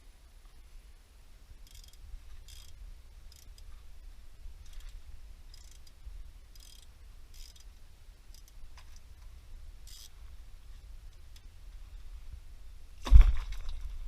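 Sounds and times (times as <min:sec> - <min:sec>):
low steady rumble: 0:00.0 - 0:14.0
hand tool clicking rasps: 0:06.6 - 0:07.7.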